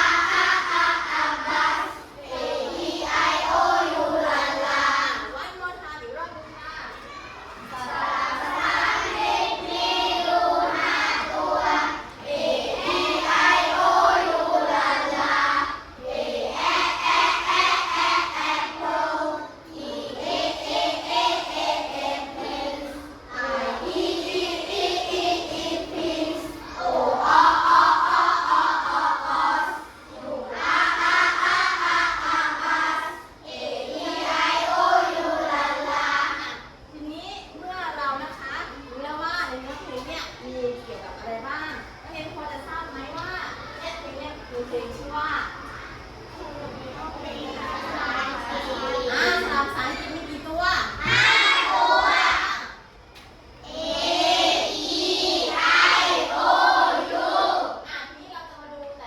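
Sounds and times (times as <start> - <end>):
children singing in unison: 0.0 - 5.3, 7.6 - 36.8, 50.9 - 52.8, 53.6 - 57.8.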